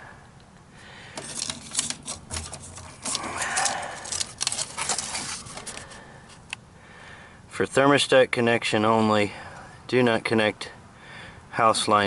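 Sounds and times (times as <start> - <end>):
hard objects clicking and rattling: 1.1 - 6.0.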